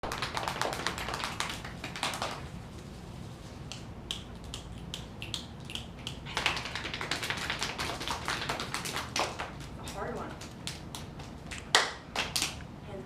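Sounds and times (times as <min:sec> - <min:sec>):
rapid sharp taps: 0:03.7 - 0:12.6.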